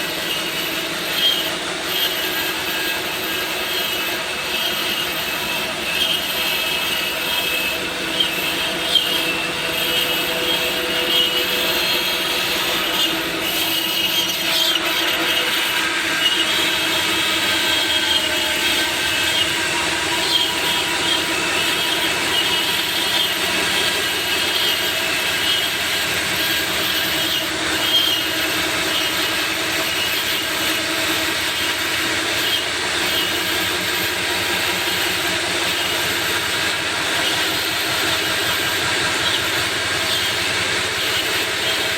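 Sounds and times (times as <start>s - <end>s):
cnc machine cutting: 0.0s - 41.9s
cutting tool whining: 0.0s - 41.9s.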